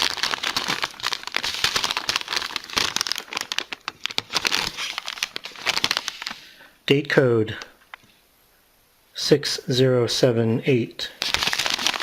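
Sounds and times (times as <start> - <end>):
food pouches crinkling: 0.0 - 6.6, 11.2 - 12.0.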